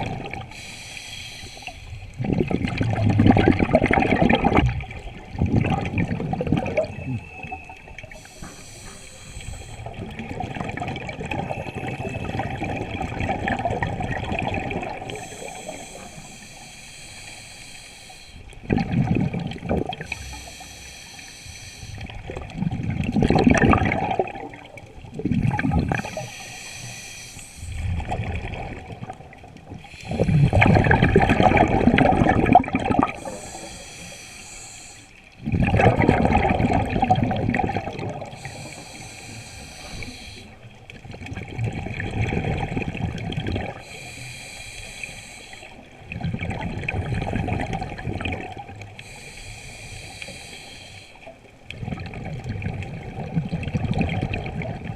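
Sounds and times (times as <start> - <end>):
exhaled bubbles rushing: 0.0 - 0.5, 2.1 - 16.1, 18.5 - 20.4, 22.0 - 26.5, 27.6 - 33.6, 35.3 - 38.9, 39.6 - 43.9, 45.8 - 49.0, 51.6 - 54.9
hissing regulator inhale: 0.4 - 2.2, 8.1 - 10.0, 15.1 - 18.6, 20.0 - 22.2, 25.9 - 27.8, 29.8 - 30.7, 33.1 - 35.3, 38.3 - 40.6, 43.8 - 45.9, 49.0 - 51.4.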